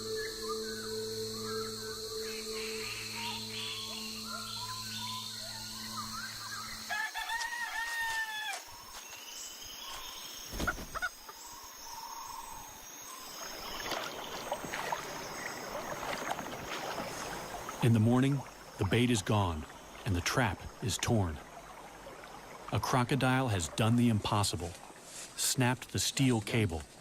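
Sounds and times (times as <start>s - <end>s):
low steady drone: 0.0s - 6.8s
small birds chirping: 0.0s - 6.9s, 8.7s - 20.2s
rooster crowing: 6.9s - 8.6s.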